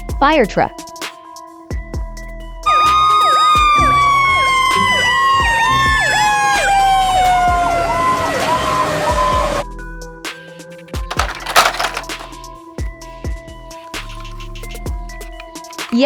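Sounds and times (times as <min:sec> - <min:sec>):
fire truck siren wailing: 0:02.7 - 0:09.6.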